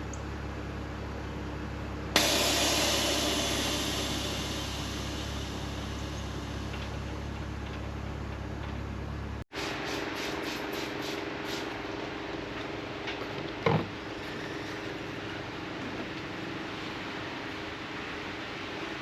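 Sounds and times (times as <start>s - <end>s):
loud rush of hiss: 2.2s - 8.0s, 9.5s - 13.0s.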